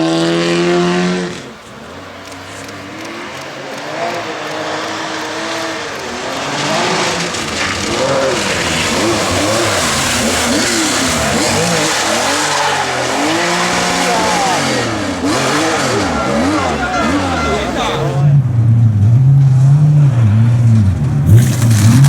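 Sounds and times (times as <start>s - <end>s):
rally car engine revving: 0.0s - 22.0s.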